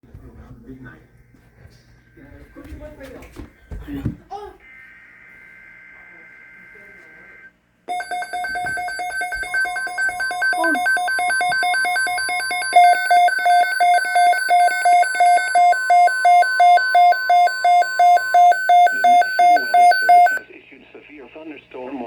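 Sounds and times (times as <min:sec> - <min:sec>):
faint steady tone: 0:04.6 - 0:20.4
electronic alarm beeping: 0:04.7 - 0:20.4.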